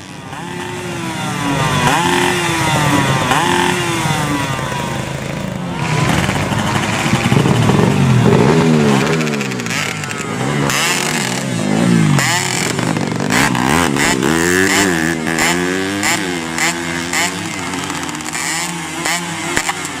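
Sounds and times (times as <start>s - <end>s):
motorcycle engine revving: 0.0s - 20.0s.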